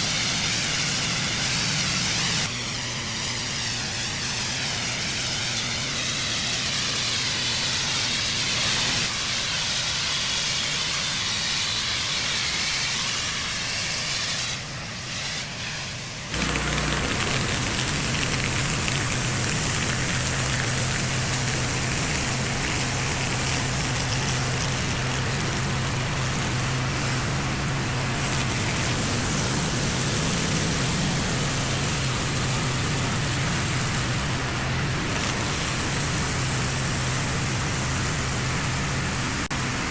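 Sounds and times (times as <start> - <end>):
pressure washer spraying water: 0.0 - 2.5, 15.4 - 39.9
steady low hum: 16.3 - 39.9.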